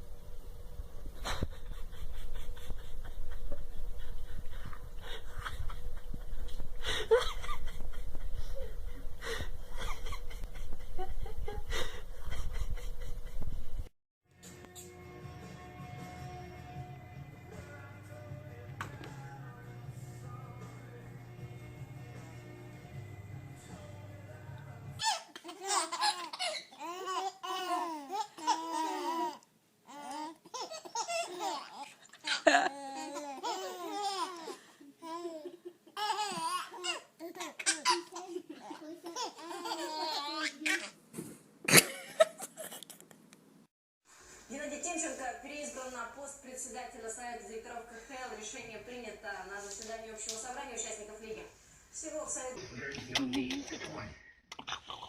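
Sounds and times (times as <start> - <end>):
background music: 14.3 - 25.0
baby laughing: 25.0 - 41.0.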